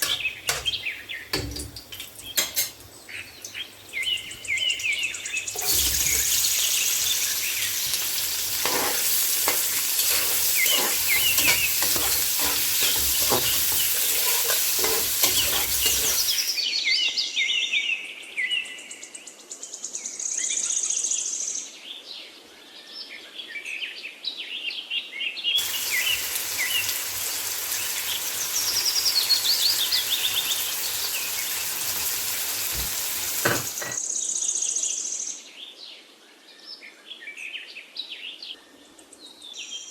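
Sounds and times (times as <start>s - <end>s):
birds chirping: 0.0s - 16.6s, 25.6s - 31.8s
food sizzling in hot oil: 0.0s - 16.6s, 25.6s - 34.0s
scraping stirring strokes: 5.6s - 16.6s.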